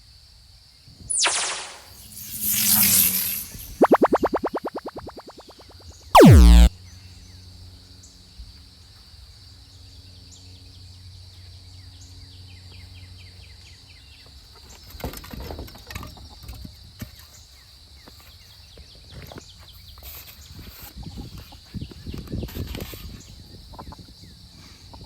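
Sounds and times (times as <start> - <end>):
bird chirps: 1.1 - 6.7
high-pitched drone: 1.1 - 6.7
low hum: 1.1 - 6.7.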